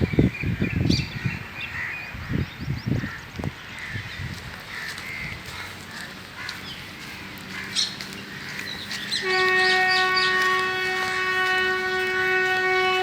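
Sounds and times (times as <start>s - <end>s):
locomotive horn blast: 9.1s - 13.0s.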